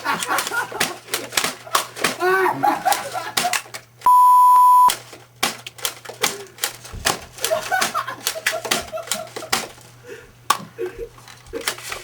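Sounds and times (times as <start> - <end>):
loud steady beep tone: 4.1 - 4.9.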